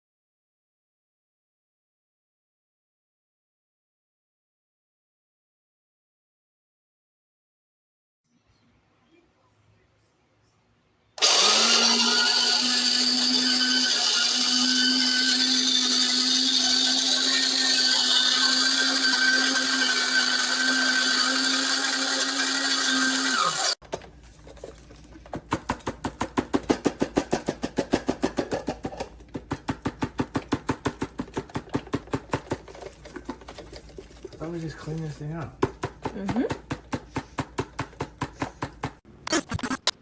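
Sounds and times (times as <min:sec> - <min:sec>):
coffee grinder humming: 0:11.2 - 0:23.8.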